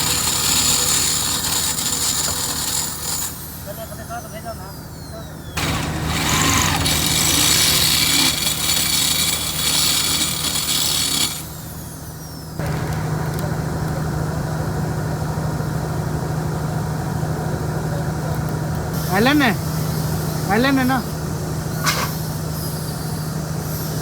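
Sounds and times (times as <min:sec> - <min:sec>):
power tool rasping on metal: 0:00.0 - 0:04.2, 0:05.6 - 0:12.2
low machine hum: 0:02.7 - 0:24.0.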